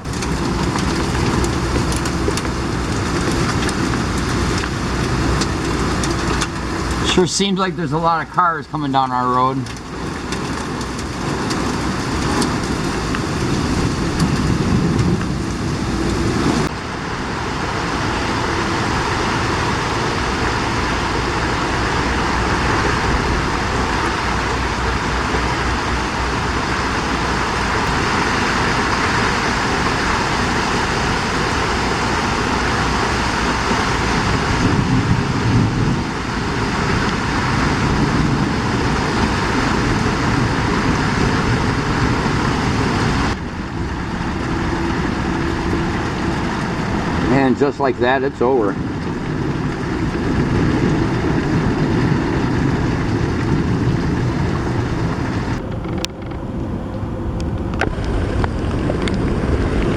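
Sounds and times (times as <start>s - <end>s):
heavy rain pouring: 0.0s - 59.9s
low thunder rumble: 0.0s - 59.9s.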